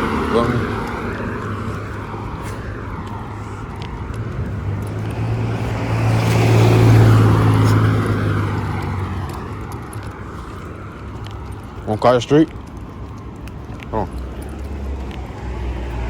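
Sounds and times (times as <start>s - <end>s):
car driving past: 0.0s - 10.2s, 14.4s - 16.0s.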